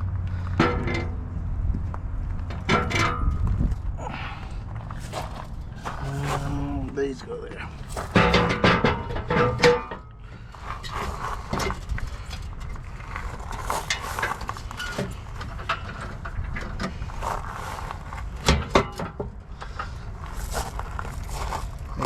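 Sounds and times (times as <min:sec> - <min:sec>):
low steady rumble: 0:00.0 - 0:22.0
metal parts knocking and clinking: 0:07.8 - 0:10.1.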